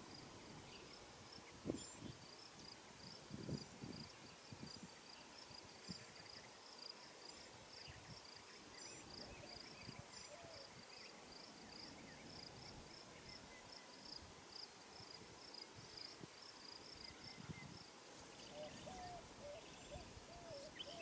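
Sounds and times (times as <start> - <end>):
faint insect chirping: 0.0 - 21.0.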